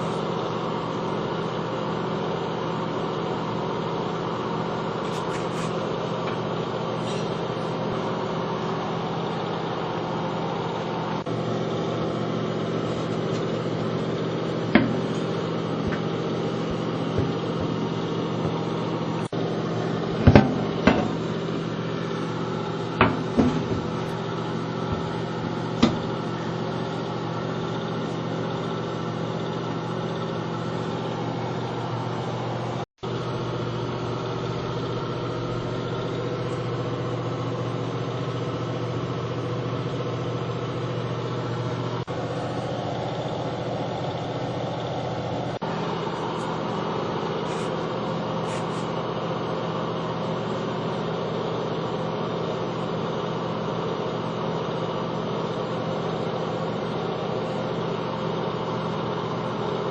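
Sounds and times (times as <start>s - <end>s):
low machine hum: 0.0s - 59.9s
sharp knocks and clicks: 14.8s - 16.2s, 16.8s - 17.8s, 23.0s - 24.2s, 25.8s - 26.2s.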